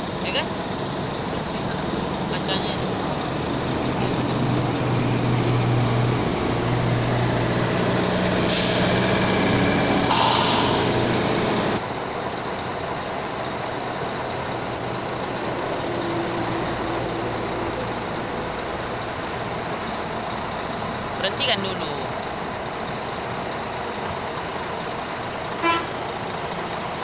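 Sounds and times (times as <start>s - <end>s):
bus engine humming: 0.0s - 27.0s
air brake hiss: 8.4s - 9.0s, 10.1s - 11.0s.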